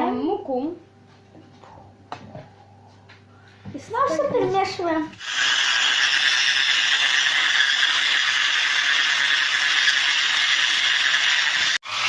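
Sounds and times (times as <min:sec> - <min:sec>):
electric hand mixer running: 0:05.2 - 0:12.0.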